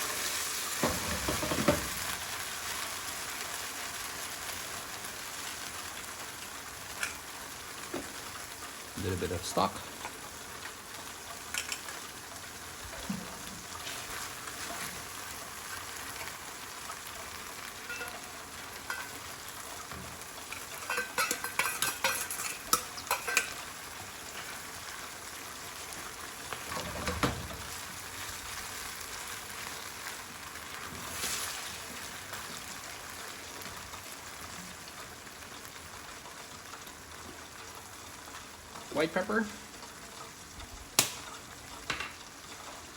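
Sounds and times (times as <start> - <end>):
sauce sizzling in a pan: 0.0 - 42.9
spatula clattering against pan: 17.9 - 18.2, 18.8 - 19.2, 20.5 - 23.6.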